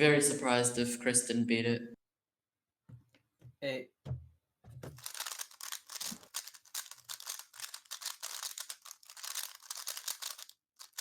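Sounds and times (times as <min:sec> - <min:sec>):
puzzle cube plastic clicking: 0:05.0 - 0:11.0.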